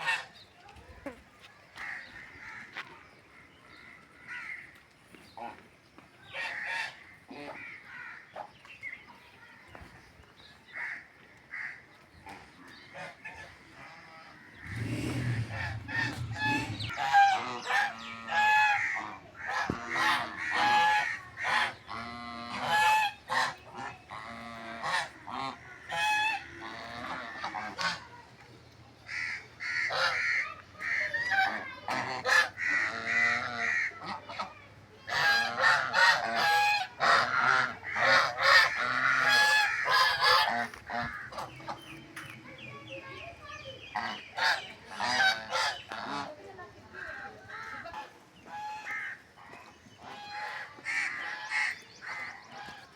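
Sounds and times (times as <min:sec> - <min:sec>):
geese honking: 0:12.9 - 0:28.1, 0:29.1 - 0:42.0, 0:43.9 - 0:52.9.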